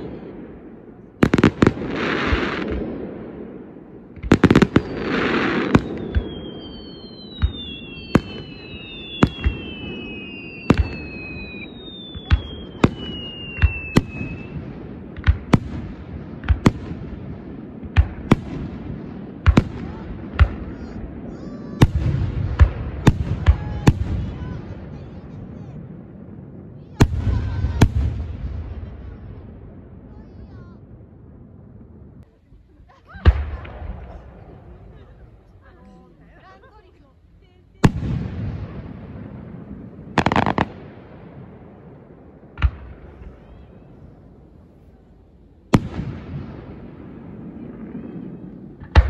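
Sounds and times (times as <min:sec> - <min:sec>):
hissing crackle of fireworks: 0:00.0 - 0:49.0
falling firework whistles: 0:04.4 - 0:14.6
firework shells bursting with bangs: 0:37.8 - 0:44.1.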